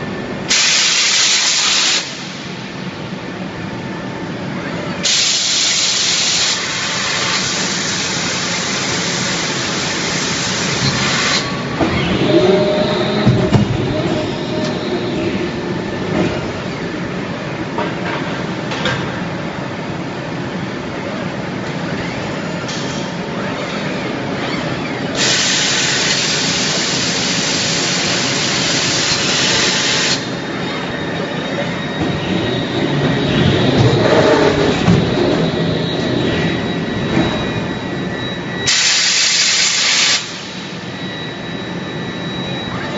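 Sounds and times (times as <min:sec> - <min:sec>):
loud hiss: 0:00.5 - 0:02.5, 0:25.2 - 0:30.3
machinery squealing: 0:10.1 - 0:17.3, 0:21.8 - 0:26.0, 0:28.2 - 0:38.7.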